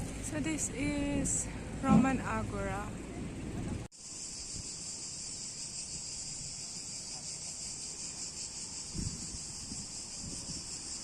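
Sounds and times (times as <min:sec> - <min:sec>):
cicadas buzzing: 0:03.9 - 0:11.0.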